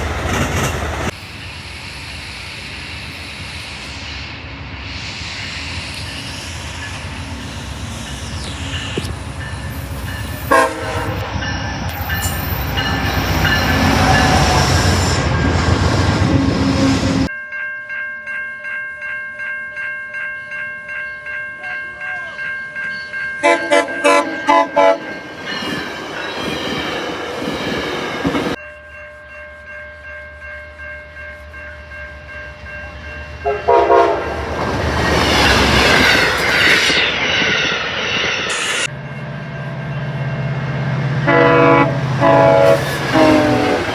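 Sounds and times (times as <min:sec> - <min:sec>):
train passing loudly: 0:00.0 - 0:17.3, 0:21.8 - 0:28.6, 0:29.2 - 0:43.9
locomotive air horn: 0:10.5 - 0:11.4, 0:23.4 - 0:25.2, 0:33.4 - 0:34.4, 0:41.2 - 0:43.9.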